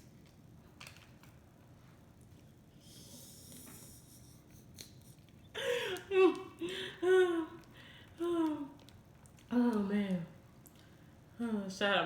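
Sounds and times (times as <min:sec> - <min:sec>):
chewing food: 0:07.6 - 0:09.8.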